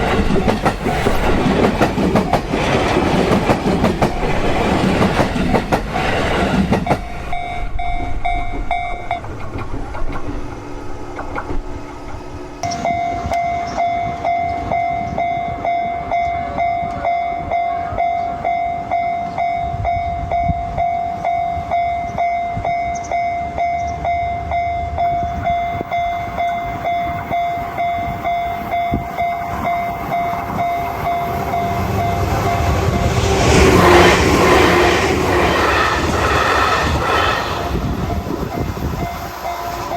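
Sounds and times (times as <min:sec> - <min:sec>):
train passing: 0:00.0 - 0:39.9
train rumble: 0:00.0 - 0:39.9
level crossing warning bell: 0:12.6 - 0:33.1.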